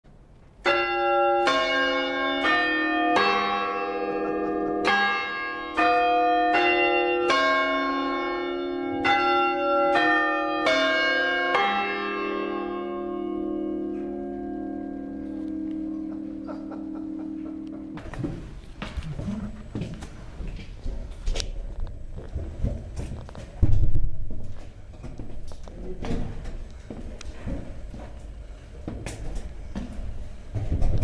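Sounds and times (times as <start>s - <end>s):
church bells ringing: 0.6s - 18.4s.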